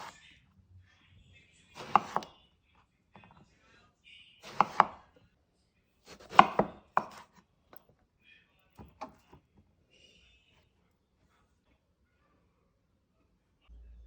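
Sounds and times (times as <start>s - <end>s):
knife chopping on cutting board: 1.8s - 2.3s, 4.4s - 5.1s, 6.1s - 7.4s.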